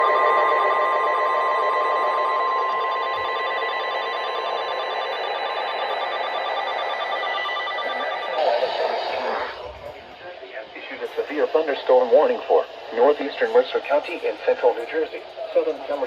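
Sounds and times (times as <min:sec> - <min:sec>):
steady warning alarm tone: 0:00.0 - 0:09.8, 0:10.7 - 0:16.0
radio hiss: 0:08.3 - 0:16.0.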